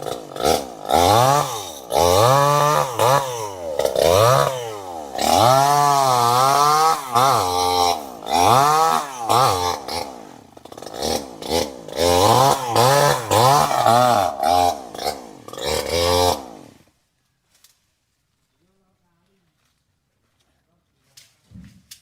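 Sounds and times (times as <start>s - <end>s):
chainsaw engine revving: 0.0s - 16.9s.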